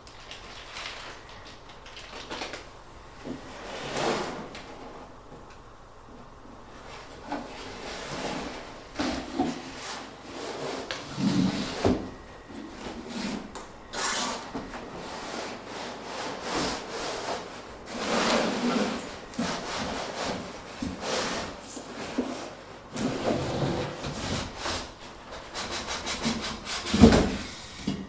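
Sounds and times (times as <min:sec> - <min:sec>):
cardboard rubbing and scraping: 0:12.8 - 0:27.4.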